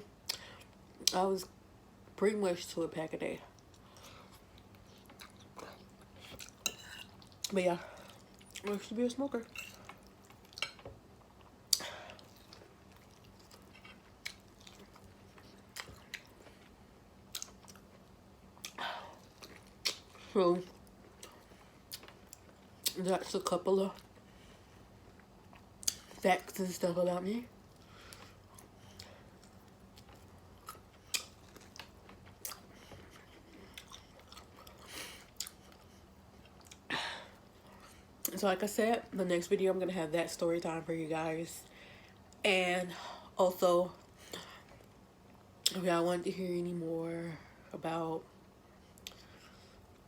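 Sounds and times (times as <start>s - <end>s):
person chewing food: 3.5s - 8.7s, 9.5s - 23.0s, 27.6s - 36.9s, 48.8s - 50.0s.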